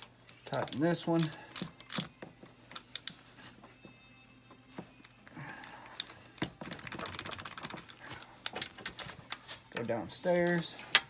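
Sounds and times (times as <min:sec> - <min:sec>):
socket ratchet clicking: 0:00.5 - 0:02.1, 0:02.7 - 0:03.2.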